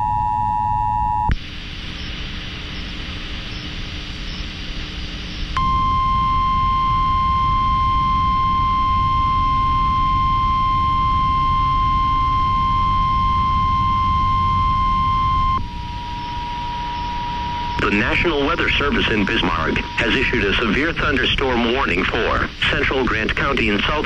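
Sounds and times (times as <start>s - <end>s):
low radio hiss: 1.3s - 24.0s
steady radio alarm tone: 5.6s - 24.0s.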